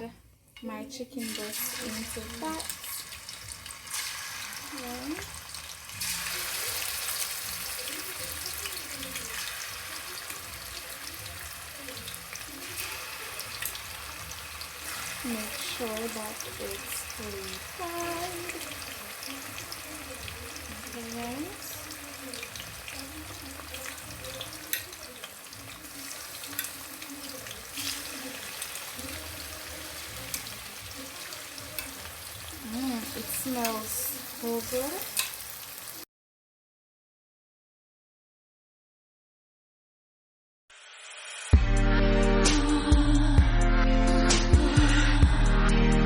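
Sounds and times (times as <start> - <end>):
chicken frying in hot oil: 1.2 - 36.1, 40.7 - 41.6
utensil clicking against pan: 24.6 - 25.4, 31.8 - 32.0.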